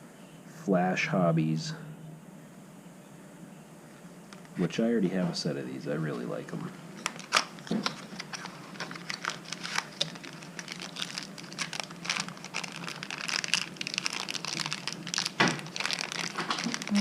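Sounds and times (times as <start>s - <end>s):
packaging crinkling: 7.0s - 17.0s.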